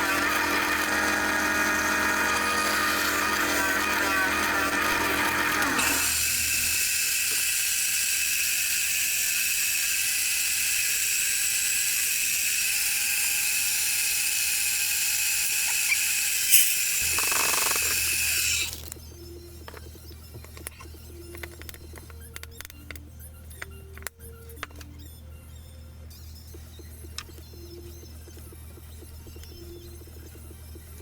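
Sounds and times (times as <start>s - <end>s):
power tool whining: 0.0s - 19.0s.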